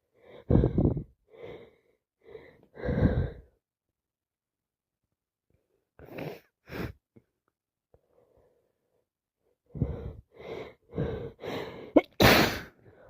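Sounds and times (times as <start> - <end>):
person sneezing: 12.0 - 12.7.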